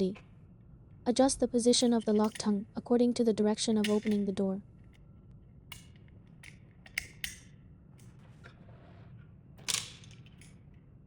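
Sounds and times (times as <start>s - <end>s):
lock mechanism clicking: 1.7s - 2.6s, 3.8s - 5.1s, 5.7s - 8.2s
lock latch clack: 3.8s - 4.3s.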